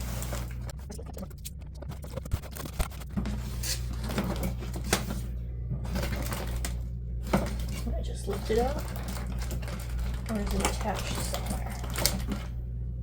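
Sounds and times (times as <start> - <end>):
cardboard box rustling and scraping: 0.0 - 0.6, 2.4 - 7.8.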